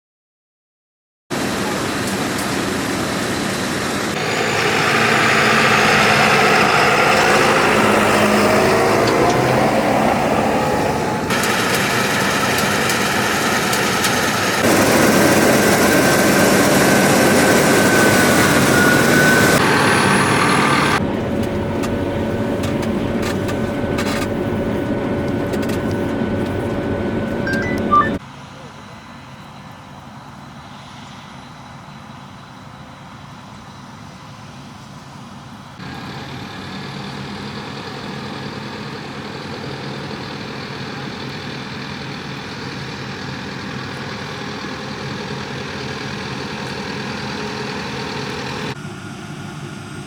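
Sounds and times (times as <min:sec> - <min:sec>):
heavy machinery engines running: 0:01.3 - 0:50.0
gliding machine whines: 0:01.4 - 0:28.2.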